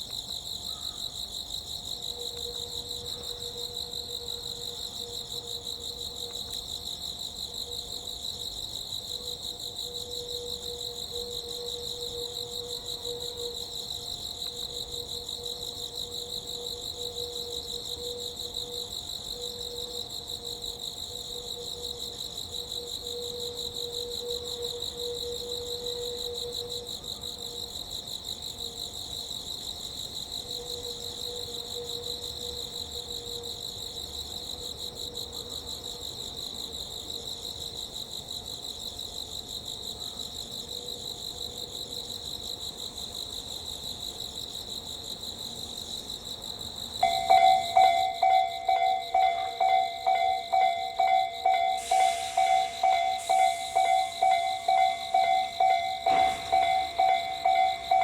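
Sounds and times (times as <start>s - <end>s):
crickets chirping: 0.0s - 58.0s
faint wavering tone: 47.0s - 58.0s
steady hum: 47.0s - 58.0s.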